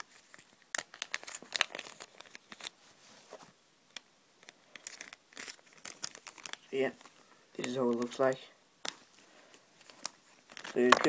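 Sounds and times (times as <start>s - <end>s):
plastic bag crinkling: 0.0s - 2.8s, 4.4s - 8.3s, 8.9s - 11.0s.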